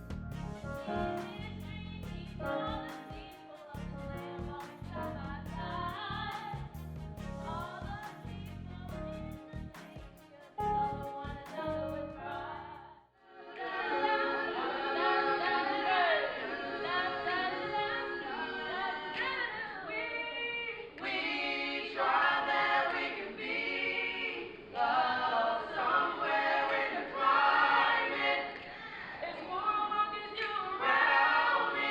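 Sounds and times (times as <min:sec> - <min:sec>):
music: 0:00.0 - 0:28.8
choir singing unaccompanied: 0:00.0 - 0:31.9.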